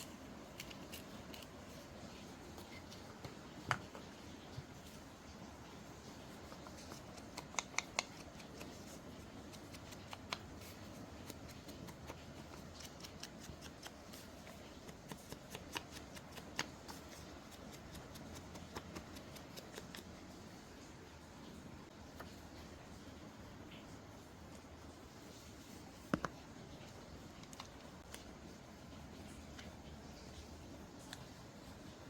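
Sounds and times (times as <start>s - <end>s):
small taps and clicks: 2.6s - 4.7s, 6.5s - 10.6s, 26.0s - 26.5s.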